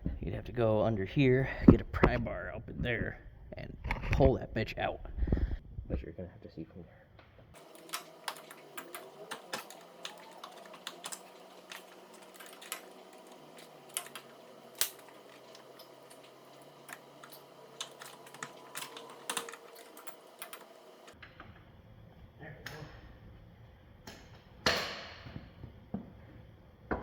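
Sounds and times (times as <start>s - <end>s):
faint steady hum: 7.6s - 21.2s
metal tools clicking and tapping: 7.6s - 21.2s.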